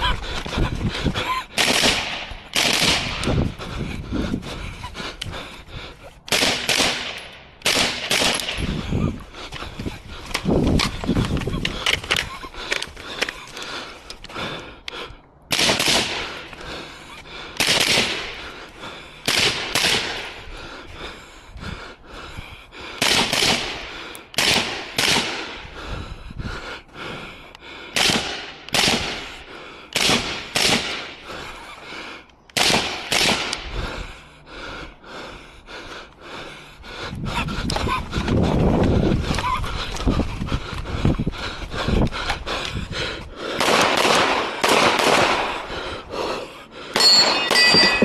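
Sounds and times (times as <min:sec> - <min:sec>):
rifle shots echoing: 0:01.6 - 0:03.3, 0:06.3 - 0:08.6, 0:15.5 - 0:16.3, 0:17.6 - 0:18.3, 0:19.3 - 0:20.3, 0:23.0 - 0:23.8, 0:24.4 - 0:25.5, 0:28.0 - 0:29.2, 0:30.0 - 0:31.2, 0:32.6 - 0:33.6, 0:43.6 - 0:45.6.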